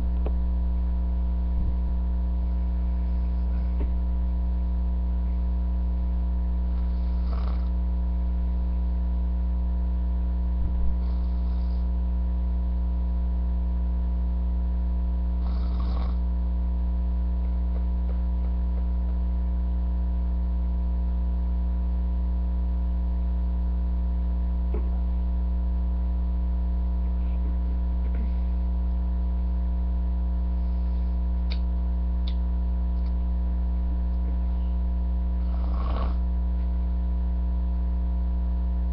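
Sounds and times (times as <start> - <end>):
loud electrical hum: 0.0 - 38.9
person snoring: 2.4 - 4.6, 6.6 - 8.8, 10.9 - 12.3, 15.2 - 16.4, 30.5 - 31.3, 34.7 - 36.4.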